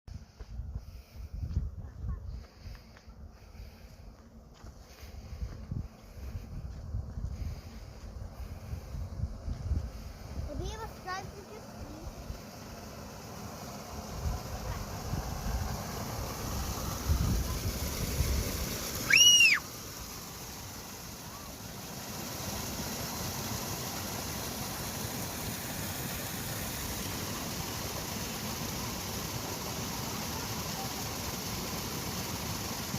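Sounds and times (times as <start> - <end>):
low rumbling: 0.2 - 28.2
steady rushing background noise: 2.4 - 32.9
bird call: 19.0 - 19.7.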